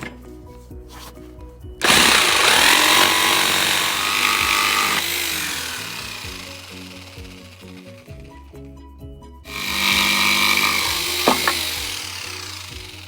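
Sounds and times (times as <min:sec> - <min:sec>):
electric power tool running: 0:01.8 - 0:08.5, 0:09.5 - 0:13.0.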